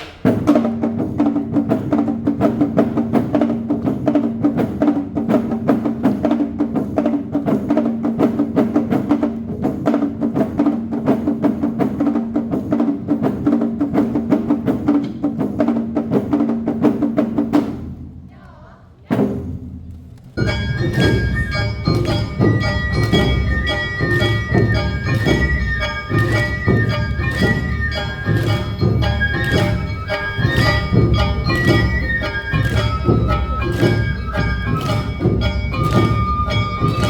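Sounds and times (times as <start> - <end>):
rapid percussion strokes: 0.0 - 18.4, 19.0 - 37.0
held notes from instruments: 20.2 - 37.0.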